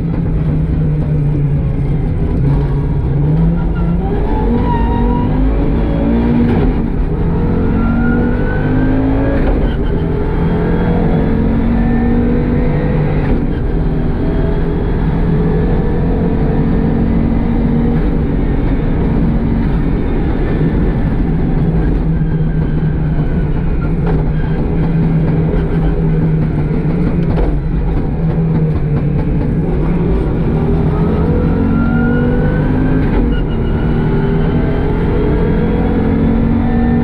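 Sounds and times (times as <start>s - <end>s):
rally car engine revving: 0.0s - 37.0s.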